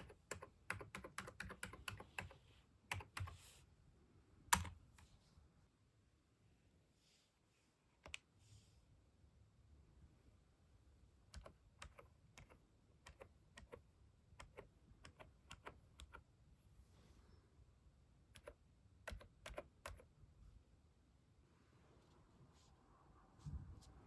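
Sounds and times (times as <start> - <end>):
keyboard typing: 0.0 - 3.5, 4.5 - 5.1, 11.3 - 16.3, 18.3 - 20.1.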